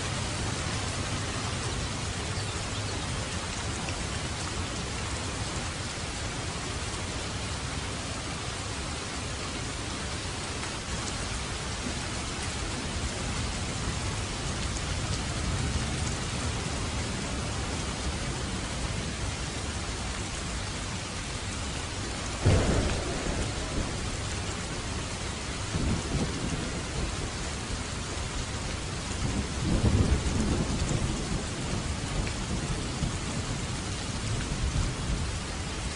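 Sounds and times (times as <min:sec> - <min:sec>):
steady rain falling: 0:00.0 - 0:35.9
thunder: 0:22.4 - 0:28.4.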